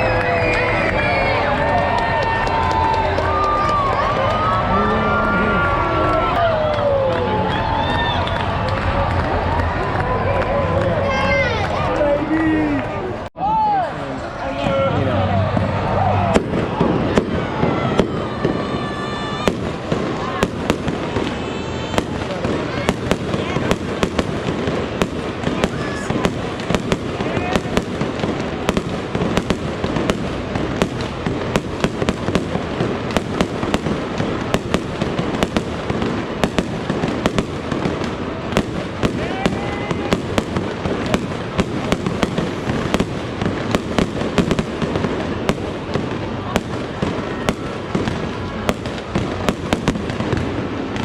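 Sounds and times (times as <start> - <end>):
fireworks bangs and crackles: 0.0 - 13.3, 14.0 - 51.0
rumble of fireworks booms: 14.6 - 51.0.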